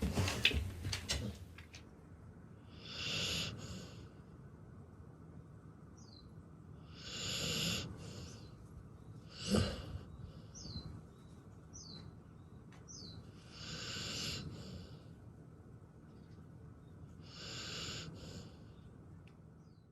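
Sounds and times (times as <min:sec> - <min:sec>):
bird chirping: 0:05.9 - 0:06.4, 0:08.1 - 0:13.4.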